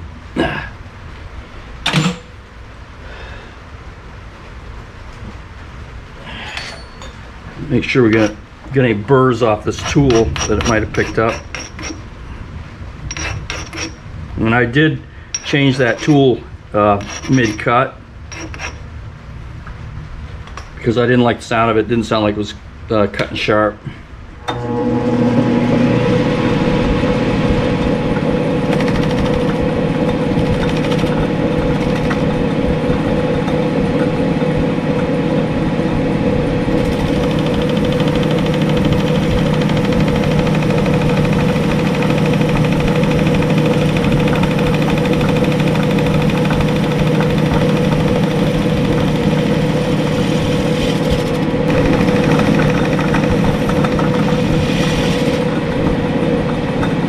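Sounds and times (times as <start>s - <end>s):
metal lathe humming: 7.8s - 8.8s, 9.7s - 12.0s, 15.4s - 16.3s, 24.4s - 57.0s.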